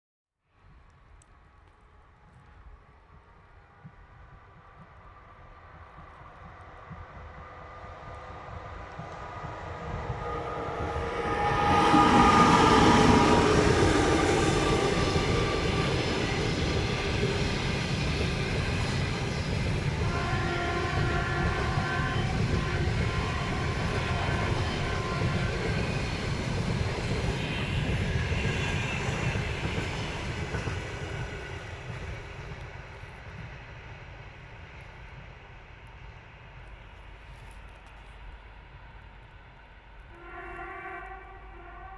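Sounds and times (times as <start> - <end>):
electric train passing: 3.3 - 37.3
steady tone: 8.5 - 17.6.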